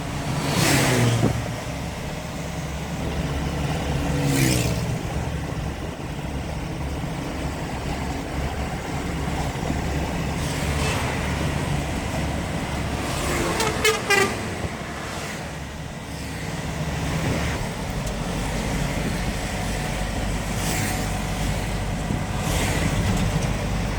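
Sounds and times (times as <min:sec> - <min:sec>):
truck engine running: 0:00.0 - 0:23.9
vehicle horn toots: 0:13.4 - 0:14.7.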